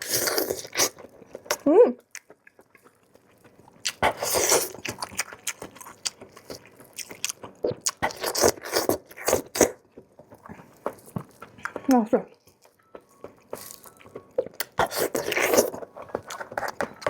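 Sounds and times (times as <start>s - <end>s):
chewing with wet smacking: 0.0s - 17.0s
crunchy biting: 13.6s - 16.8s.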